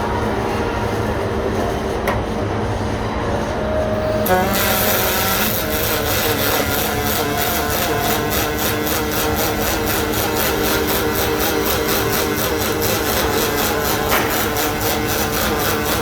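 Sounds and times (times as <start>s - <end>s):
welding arc crackling and buzzing: 4.0s - 16.0s.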